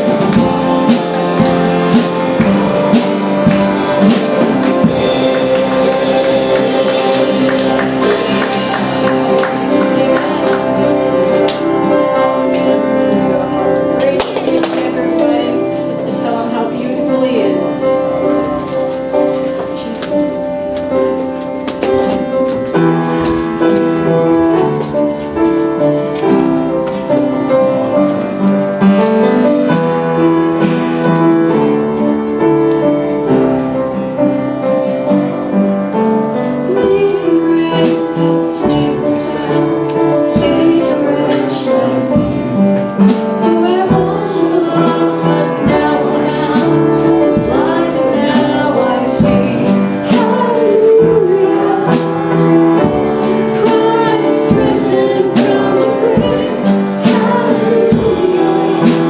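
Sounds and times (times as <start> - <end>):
sharp percussion strokes: 0.0 - 11.8
person singing: 0.0 - 21.2, 36.0 - 59.0
keyboard chords: 0.0 - 59.0.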